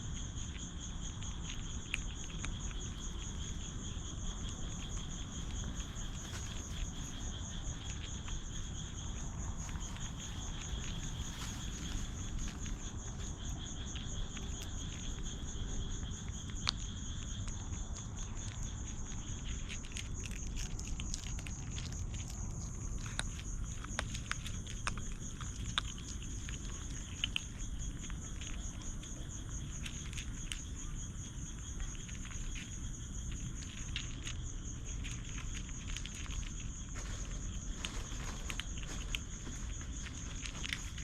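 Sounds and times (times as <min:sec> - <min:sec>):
crickets trilling: 0:00.0 - 0:41.0
light clicks and rustles: 0:01.2 - 0:18.6.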